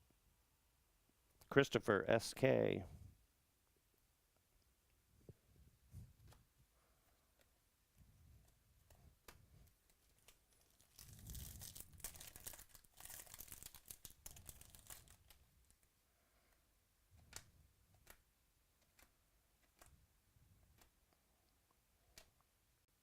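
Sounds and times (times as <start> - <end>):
wrapper tearing and crinkling: 10.0 - 15.4.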